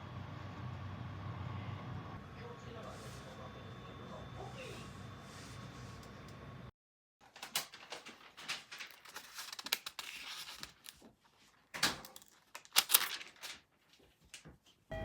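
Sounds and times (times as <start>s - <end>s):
handling crinkles and rustles: 7.3s - 14.7s.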